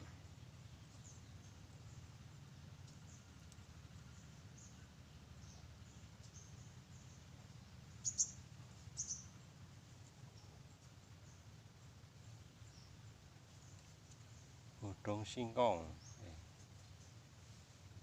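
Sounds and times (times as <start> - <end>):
low background rumble: 0.0 - 18.0
high bird chirps: 8.0 - 8.4, 9.0 - 9.3.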